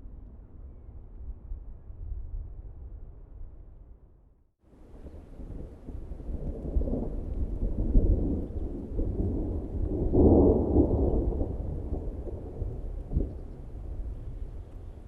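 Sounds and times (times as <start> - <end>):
thunder rumbling: 4.8 - 15.0.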